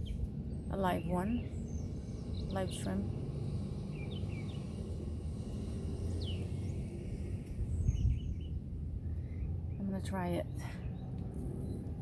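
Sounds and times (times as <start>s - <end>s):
steady low rumble: 0.0s - 12.0s
bird chirps: 3.8s - 4.8s, 6.1s - 6.9s, 7.6s - 8.6s.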